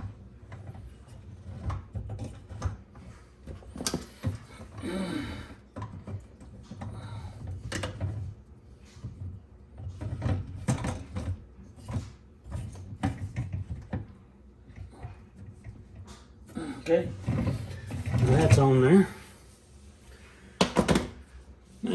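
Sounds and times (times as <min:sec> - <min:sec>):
dishwasher parts scraping: 0:05.7 - 0:19.3.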